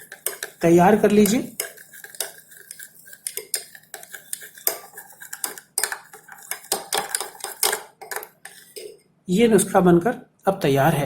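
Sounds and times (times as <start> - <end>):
spoon clinking against bowl: 0.0 - 9.0.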